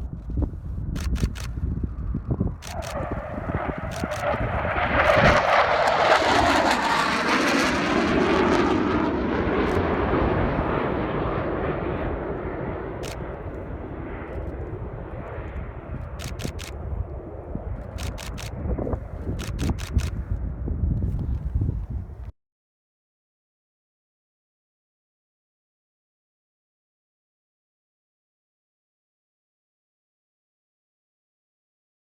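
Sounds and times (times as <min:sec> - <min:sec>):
camera shutter clicks: 0:01.0 - 0:01.6, 0:02.6 - 0:03.0, 0:03.8 - 0:04.4, 0:13.0 - 0:13.3, 0:16.2 - 0:16.8, 0:17.8 - 0:18.6, 0:19.4 - 0:20.2
jet flying past: 0:01.0 - 0:21.4.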